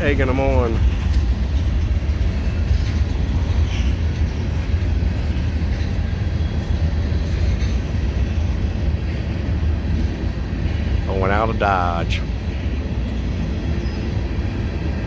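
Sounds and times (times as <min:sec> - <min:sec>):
train wheels rumbling on rails: 0:00.0 - 0:15.0
faint wheel squeal: 0:13.7 - 0:14.2.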